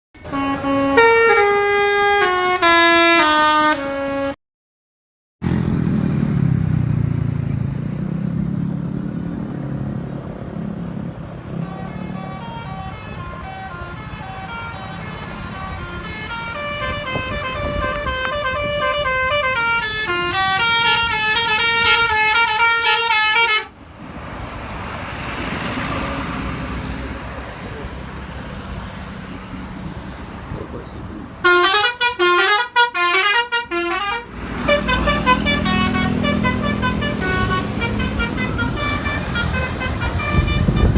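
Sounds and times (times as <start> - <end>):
bus horns playing melodies: 0.2 - 4.4, 11.4 - 23.8, 31.4 - 40.9
bus engine running: 5.4 - 40.9.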